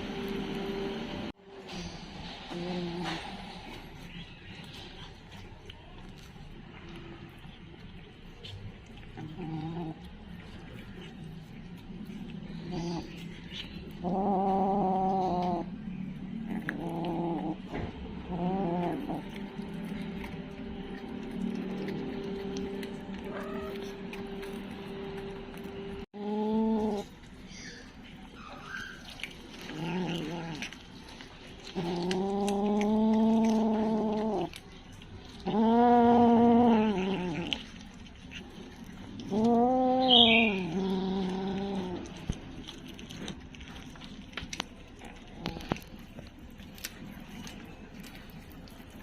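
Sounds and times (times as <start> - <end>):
kitten yowling: 23.2 - 23.9.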